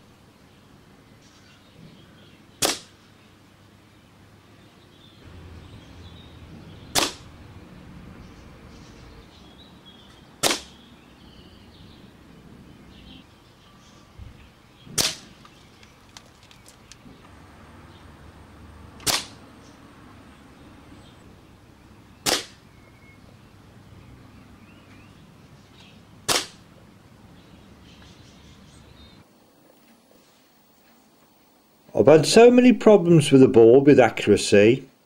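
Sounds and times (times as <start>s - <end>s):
air rifle shots: 2.6s - 3.0s, 6.9s - 7.3s, 10.4s - 10.8s, 14.9s - 15.4s, 19.0s - 19.4s, 22.2s - 22.6s, 26.2s - 26.6s.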